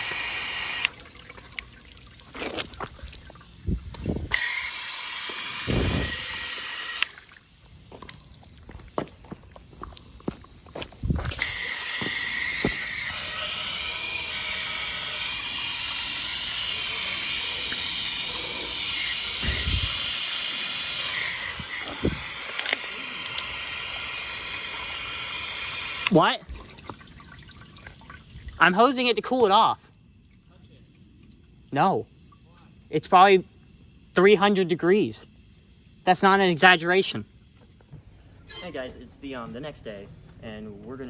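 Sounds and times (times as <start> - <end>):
hose spraying water hissing: 0.0 - 29.5.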